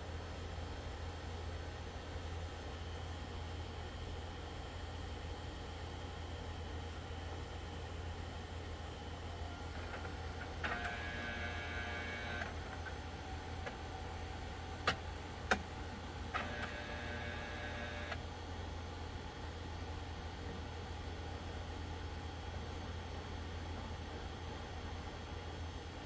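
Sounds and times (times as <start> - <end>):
printer motors whirring: 9.4 - 18.3
sharp printer clicks: 9.9 - 13.0, 14.8 - 18.2.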